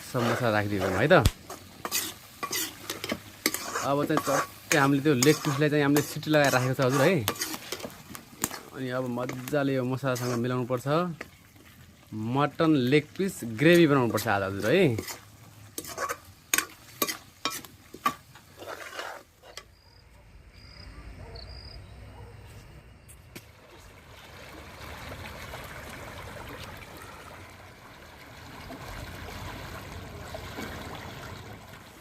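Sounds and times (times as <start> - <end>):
masala sizzling in pan: 0.0 - 19.8.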